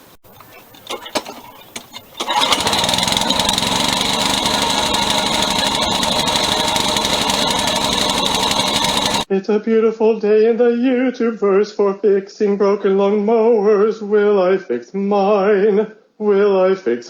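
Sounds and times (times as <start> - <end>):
lawn mower engine running: 0.0 - 9.3
faint clicks: 0.3 - 9.3.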